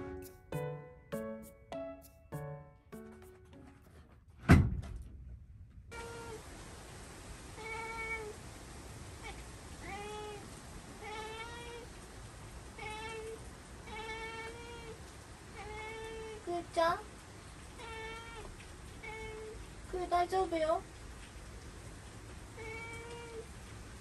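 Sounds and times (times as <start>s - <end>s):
heavy thump: 4.4s - 5.4s
cat meowing: 7.6s - 8.4s, 9.2s - 11.9s, 12.8s - 16.5s, 17.8s - 19.6s, 22.6s - 23.5s.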